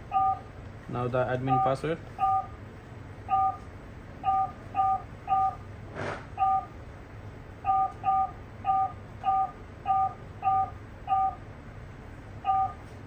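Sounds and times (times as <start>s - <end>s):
two-tone keypad beeps: 0.1s - 0.5s, 1.5s - 2.6s, 3.3s - 3.6s, 4.2s - 5.6s, 6.4s - 6.7s, 7.6s - 11.4s, 12.4s - 12.8s.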